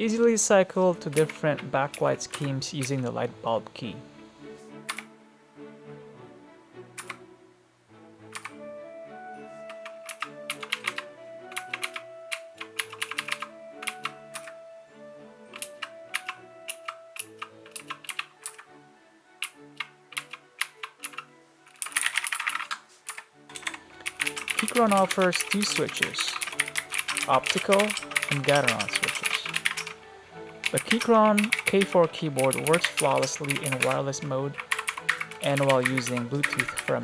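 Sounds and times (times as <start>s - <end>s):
background music: 0.0s - 37.0s
mechanical keyboard key clicks: 15.6s - 18.6s.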